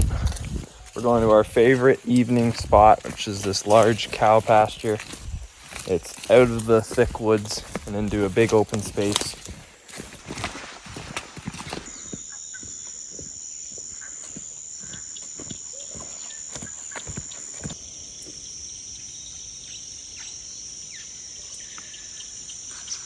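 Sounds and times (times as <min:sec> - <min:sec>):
high-pitched insect drone: 0:11.9 - 0:23.0.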